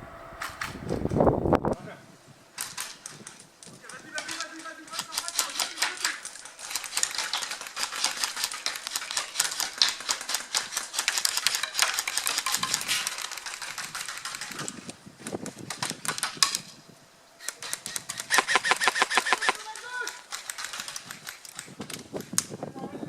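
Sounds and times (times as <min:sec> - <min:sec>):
airsoft guns firing: 0:02.6 - 0:14.7, 0:17.5 - 0:21.7.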